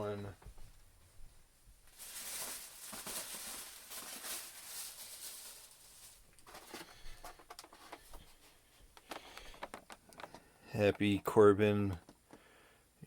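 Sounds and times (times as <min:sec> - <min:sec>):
packaging rustling and crinkling: 0:01.9 - 0:10.4
light clicks and taps: 0:08.9 - 0:12.5.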